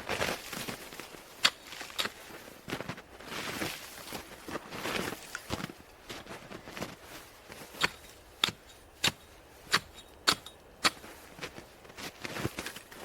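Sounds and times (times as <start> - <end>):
crunching in snow: 0.0 - 8.2, 11.0 - 13.0.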